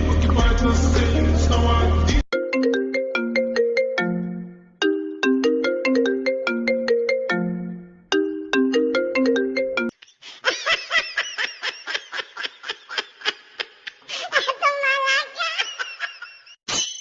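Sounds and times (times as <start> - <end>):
bell-like ringtone tune: 2.3 - 9.9.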